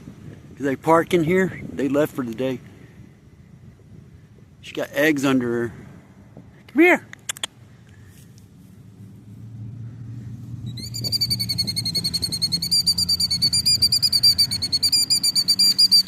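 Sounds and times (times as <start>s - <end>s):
low engine rumble: 7.2s - 16.0s
bird shrill alarm trill: 10.7s - 16.0s.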